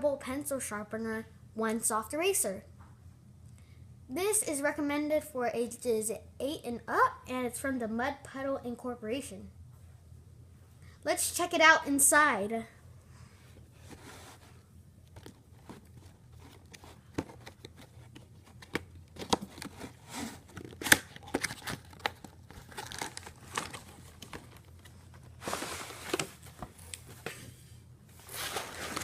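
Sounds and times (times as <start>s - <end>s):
packaging crinkling and tearing: 15.1s - 27.0s, 28.2s - 29.0s.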